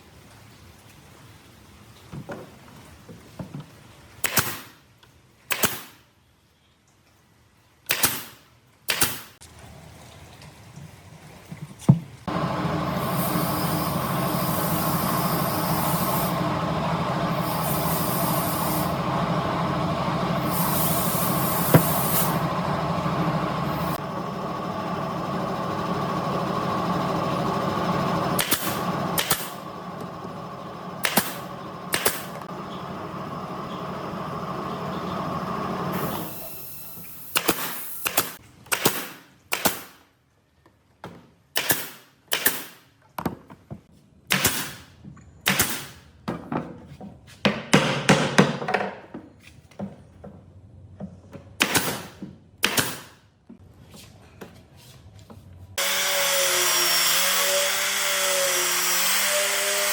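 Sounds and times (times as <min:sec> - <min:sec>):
hissing bursts: 0:12.3 - 0:24.0
woodworking power tool humming: 0:12.3 - 0:38.4, 0:55.8 - 0:59.9.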